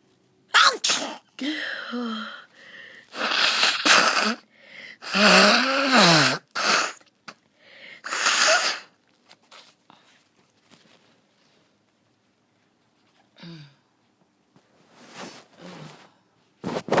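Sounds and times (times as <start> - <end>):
person sneezing: 0.6 - 1.8, 3.1 - 4.4, 8.0 - 9.0.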